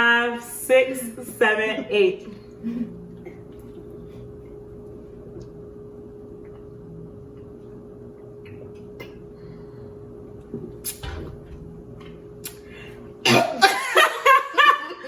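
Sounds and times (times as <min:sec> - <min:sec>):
faint steady hum: 0:00.0 - 0:15.0
people swallowing: 0:02.5 - 0:05.6.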